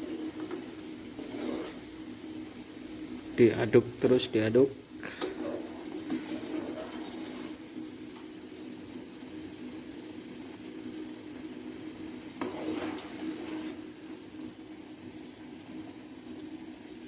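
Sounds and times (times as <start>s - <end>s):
stirring: 0.0s - 8.8s, 11.4s - 14.2s
water boiling and bubbling: 0.0s - 17.0s.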